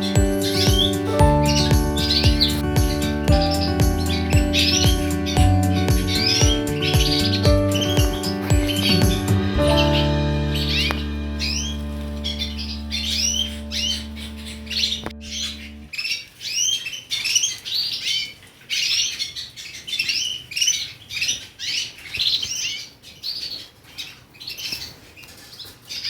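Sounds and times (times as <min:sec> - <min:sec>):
backing music: 0:00.0 - 0:15.9
small birds chirping: 0:00.0 - 0:26.0.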